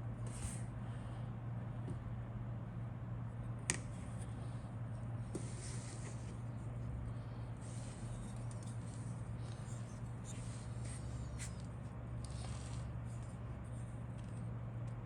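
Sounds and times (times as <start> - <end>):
low electrical hum: 0.0 - 15.0
rustling and scraping of handling: 3.9 - 14.9.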